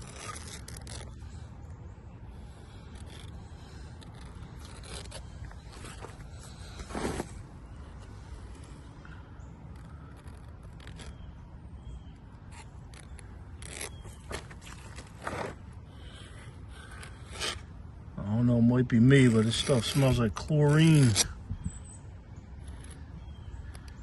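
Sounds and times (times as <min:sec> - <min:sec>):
caulk spreader scraping: 0:02.6 - 0:07.4, 0:12.5 - 0:15.6, 0:16.8 - 0:17.7, 0:19.0 - 0:21.4.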